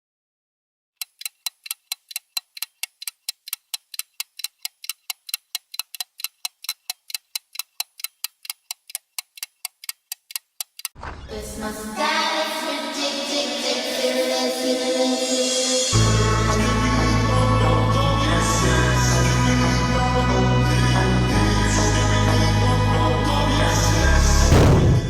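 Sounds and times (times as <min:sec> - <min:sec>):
clock ticking: 0:01.0 - 0:11.0
music with singing: 0:11.3 - 0:24.5.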